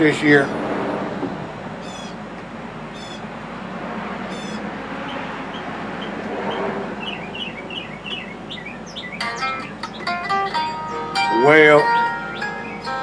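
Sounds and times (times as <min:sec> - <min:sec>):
outdoor background hiss: 0:00.0 - 0:13.0
songbirds trilling: 0:00.0 - 0:13.0
short repeated bird chirps: 0:04.3 - 0:10.2.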